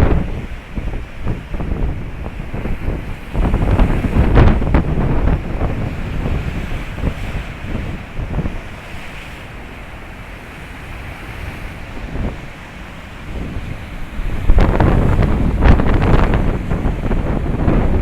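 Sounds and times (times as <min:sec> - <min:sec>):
surf rushing: 0:00.0 - 0:18.0
wind buffeting microphone: 0:00.0 - 0:18.0.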